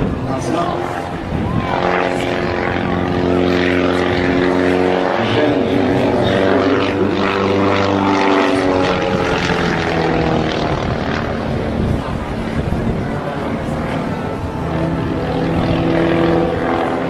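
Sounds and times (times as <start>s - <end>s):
propeller aircraft engine droning: 0.0s - 17.0s.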